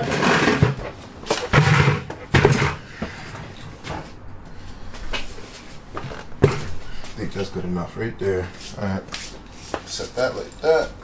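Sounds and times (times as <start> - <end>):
dirt bike knocks and clunks: 6.0 - 6.8.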